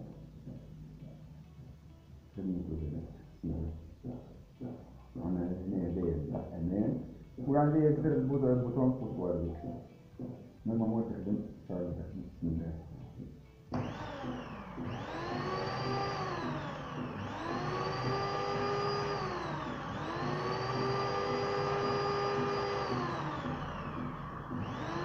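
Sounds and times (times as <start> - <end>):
electric blender motor whining: 13.7 - 25.0.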